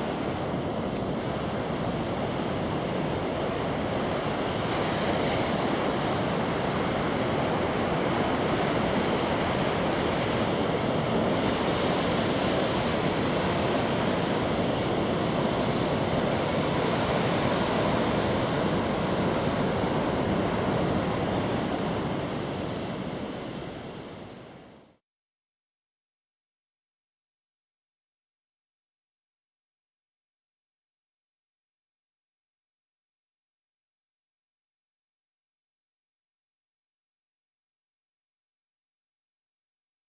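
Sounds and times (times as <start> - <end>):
surf breaking on shore: 0.0 - 24.8.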